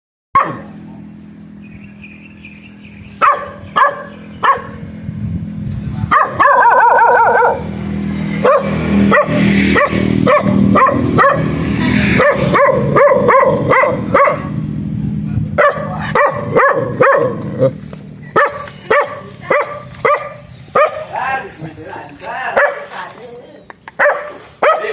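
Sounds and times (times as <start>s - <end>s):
dog barking: 0.4s - 0.8s, 3.2s - 4.9s, 6.1s - 7.7s, 8.4s - 14.6s, 15.6s - 21.2s, 22.5s - 22.9s, 24.0s - 24.9s.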